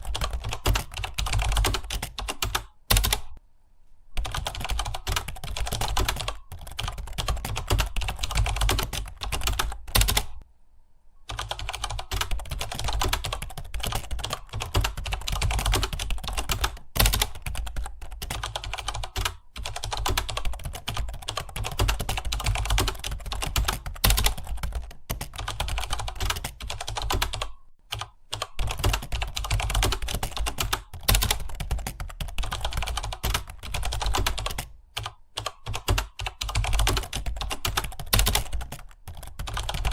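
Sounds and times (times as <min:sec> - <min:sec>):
rapid keyboard typing: 0:00.0 - 0:03.4, 0:04.2 - 0:10.4, 0:11.3 - 0:39.9.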